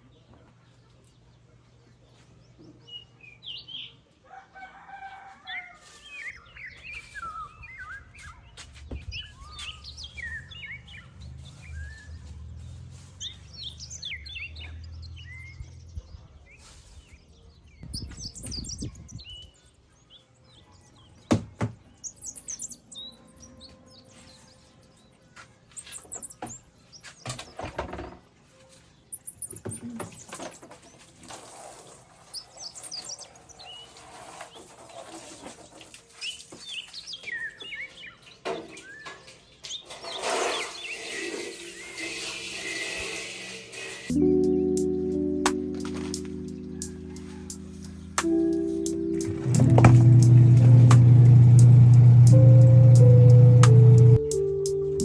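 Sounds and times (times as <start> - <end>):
small birds chirping: 5.6 - 42.3
low rumble: 49.2 - 54.2.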